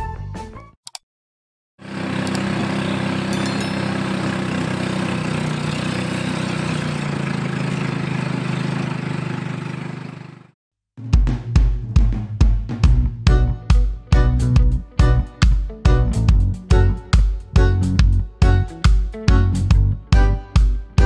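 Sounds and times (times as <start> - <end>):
motorboat engine running: 1.8 - 10.6.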